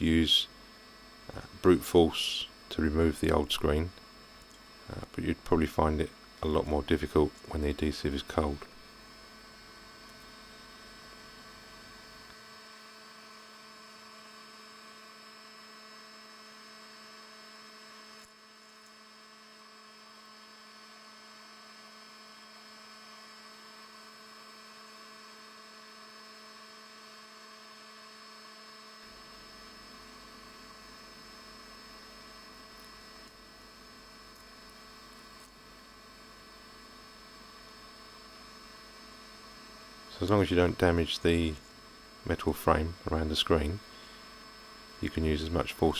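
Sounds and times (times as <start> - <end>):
faint electrical hum: 0.0 - 45.9.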